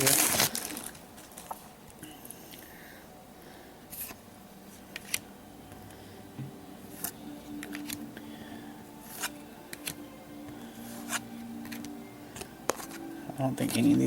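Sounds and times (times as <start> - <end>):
faint steady hum: 0.0 - 14.0
trading cards clicking and rustling: 4.8 - 5.8, 6.9 - 8.0, 9.0 - 10.0, 10.9 - 13.0, 13.6 - 14.0.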